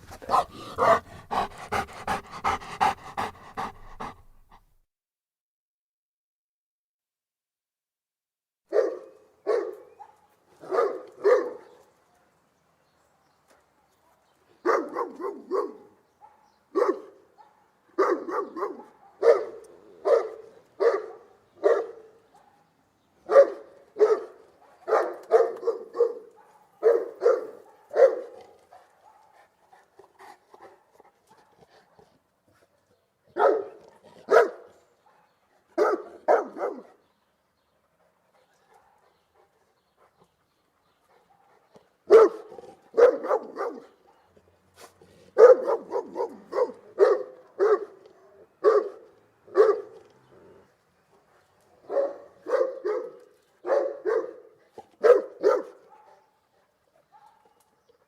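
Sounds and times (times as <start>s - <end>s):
large dog barking: 0.0s - 4.6s, 8.7s - 11.9s, 13.9s - 29.4s, 33.3s - 37.0s, 41.2s - 44.4s, 45.3s - 50.1s, 51.8s - 56.4s, 57.0s - 57.9s.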